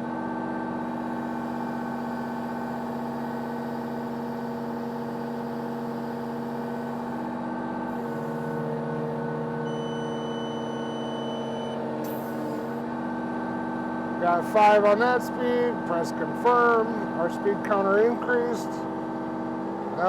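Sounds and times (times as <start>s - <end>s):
excavator diesel engine running: 0.6s - 20.0s
hydraulics working: 7.9s - 13.0s
electronic beep: 9.7s - 12.4s.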